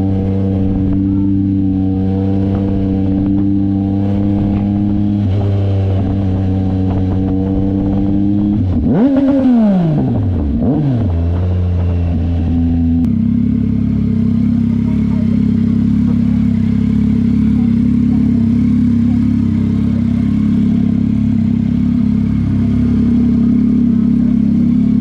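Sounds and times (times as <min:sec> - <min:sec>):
vehicle engine running: 0:00.0 - 0:25.0.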